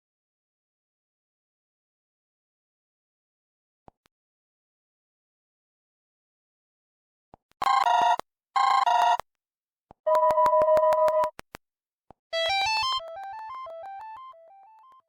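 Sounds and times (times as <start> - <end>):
electronic phone ringtones: 7.6 - 9.2, 10.1 - 11.3
synthesized ringtone melody: 12.4 - 15.0.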